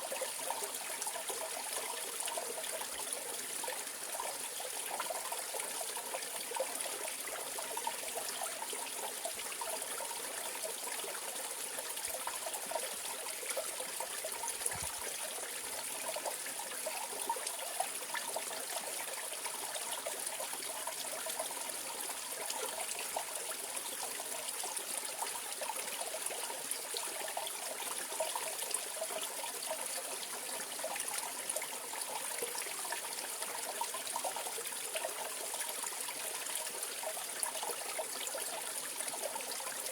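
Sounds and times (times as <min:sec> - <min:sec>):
stream flowing over rocks: 0:08.6 - 0:24.6.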